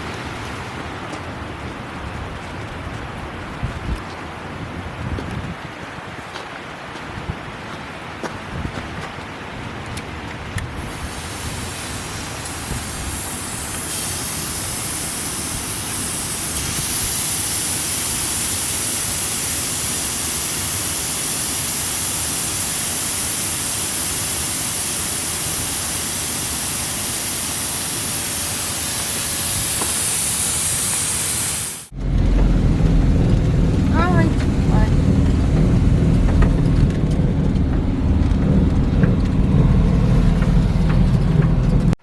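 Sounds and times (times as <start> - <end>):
car road noise on snow: 0.0 - 21.1, 28.5 - 42.0
rushing wind: 0.0 - 42.0
strong hiss: 10.6 - 32.0.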